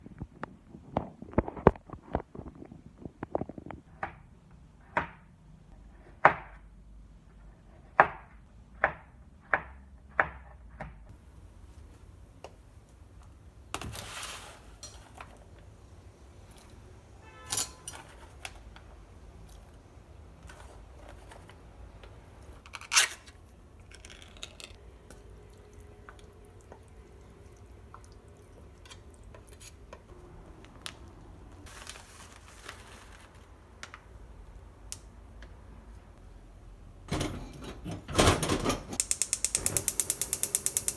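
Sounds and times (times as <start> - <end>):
low room hum: 11.1 - 40.9
dishes and utensils clinking: 13.8 - 15.6, 16.4 - 19.7
dishes clattering: 17.3 - 18.7.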